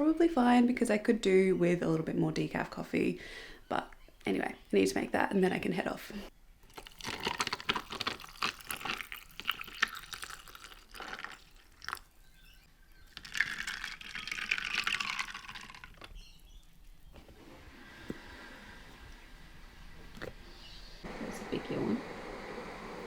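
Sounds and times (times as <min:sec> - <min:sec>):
liquid pouring: 0:06.7 - 0:12.3, 0:13.0 - 0:16.2.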